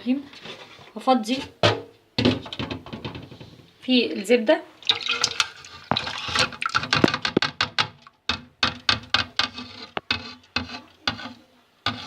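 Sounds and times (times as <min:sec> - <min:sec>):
utensils tapping and scraping metal: 0:05.2 - 0:12.0.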